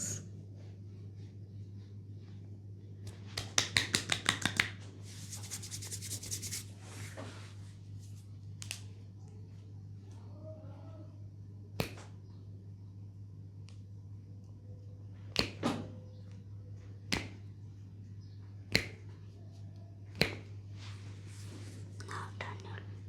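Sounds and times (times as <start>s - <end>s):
hands slapping skin: 3.1s - 6.6s, 8.6s - 8.9s, 11.8s - 12.2s, 15.3s - 15.8s, 17.1s - 17.5s, 18.7s - 19.2s, 20.1s - 20.6s
hands rubbing skin: 3.4s - 8.8s.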